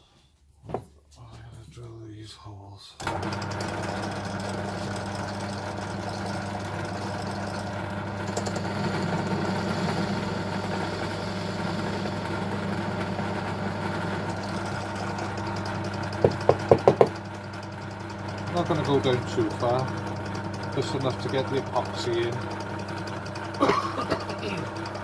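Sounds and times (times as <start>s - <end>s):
drill press drilling wood: 3.0s - 25.0s.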